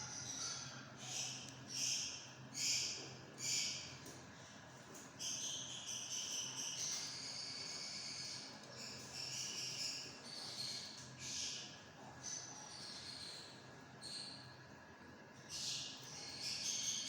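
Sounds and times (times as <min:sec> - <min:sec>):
small bird chirping: 0:15.5 - 0:17.0.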